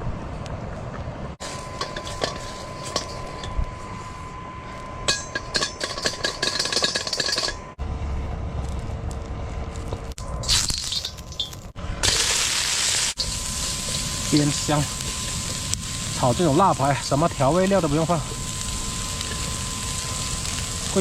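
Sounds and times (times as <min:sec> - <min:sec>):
steady hum: 0:00.0 - 0:21.0
metal cookware clinking: 0:01.8 - 0:03.6, 0:05.1 - 0:07.6
low rumble: 0:07.6 - 0:12.4.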